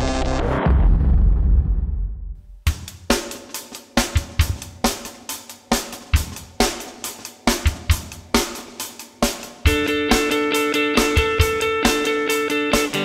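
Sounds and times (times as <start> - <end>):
drum kit steady beat: 2.6 - 13.0
guitar: 9.6 - 13.0.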